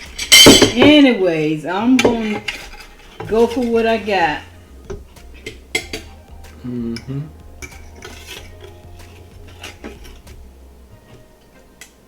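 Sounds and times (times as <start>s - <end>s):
cutlery clinking on plates: 0.0s - 1.1s, 2.0s - 4.1s, 4.9s - 6.2s, 7.6s - 10.4s
low hum: 4.0s - 11.2s.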